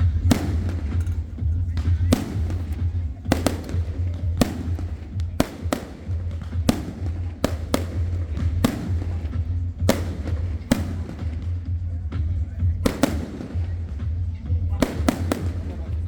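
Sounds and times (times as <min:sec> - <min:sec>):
fireworks bangs: 0:00.0 - 0:16.0
music with heavy bass: 0:00.0 - 0:16.0.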